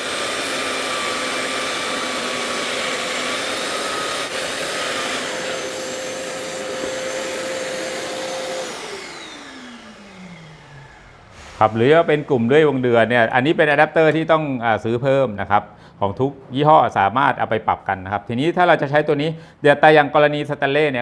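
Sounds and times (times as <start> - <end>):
electric sander whirring: 0.0 - 14.0
wet dry vacuum running: 0.0 - 14.2.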